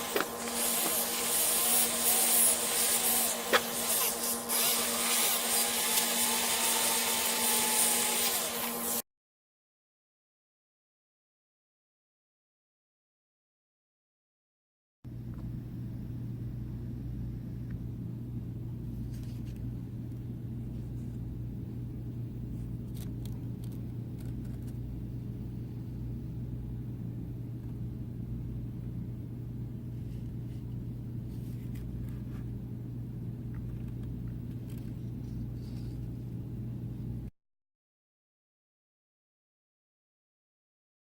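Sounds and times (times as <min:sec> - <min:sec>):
electric motor hum: 0:00.0 - 0:09.0.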